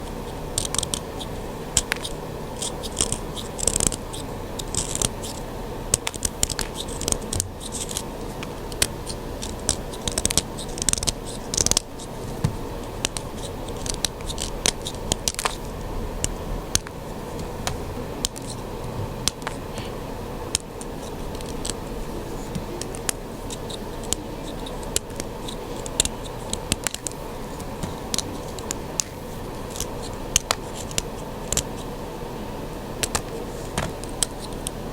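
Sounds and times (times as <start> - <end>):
faint steady hum: 0.0 - 34.9
chalk being shaved: 20.8 - 32.0.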